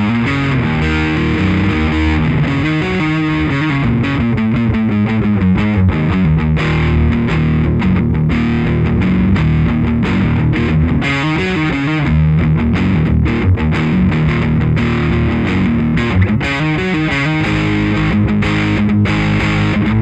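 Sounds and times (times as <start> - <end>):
distorted electric guitar riff: 0.0 - 20.0.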